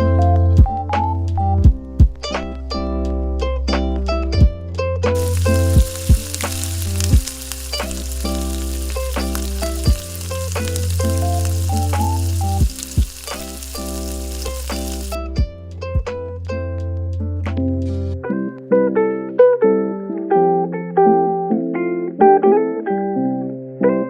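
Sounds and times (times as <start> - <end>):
plucked string music: 0.0 - 23.4
food sizzling in a pan: 5.2 - 15.2.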